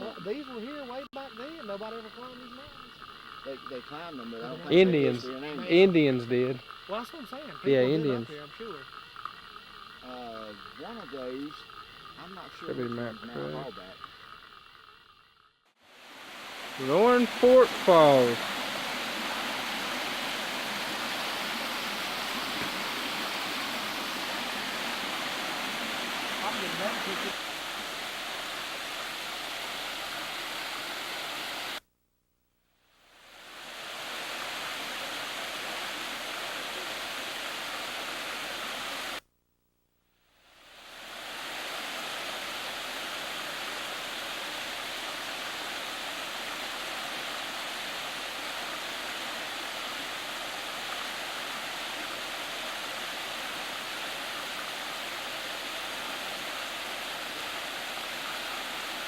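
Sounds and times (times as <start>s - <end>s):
waterfall rushing: 15.9s - 31.8s, 33.3s - 39.2s, 40.7s - 59.0s.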